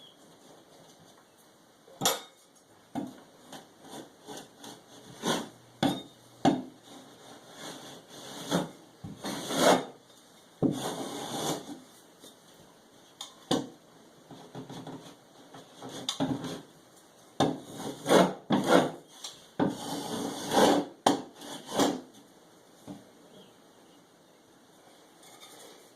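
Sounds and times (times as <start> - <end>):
scraping strokes on drywall: 3.4 - 5.6, 6.8 - 10.0, 10.6 - 11.9, 17.4 - 22.1.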